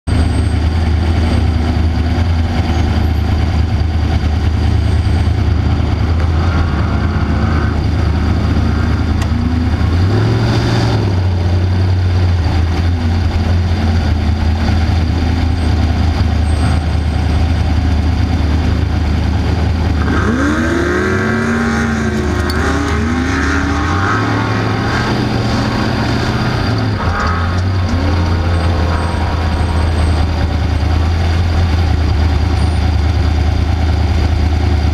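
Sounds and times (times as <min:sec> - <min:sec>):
race car engine revving: 0:00.2 - 0:34.3.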